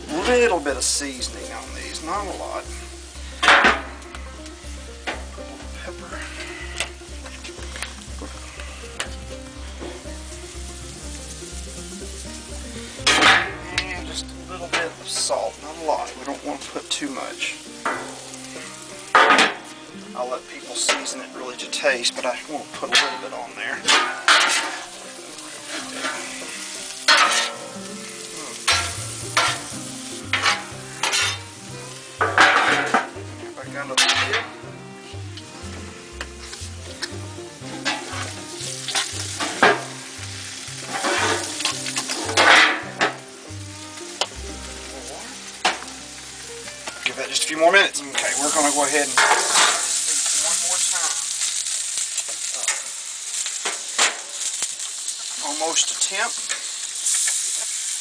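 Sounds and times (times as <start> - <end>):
low steady hum: 0.0 - 47.4
vegetables sizzling on a griddle: 1.2 - 13.6, 14.2 - 33.5, 35.0 - 58.0.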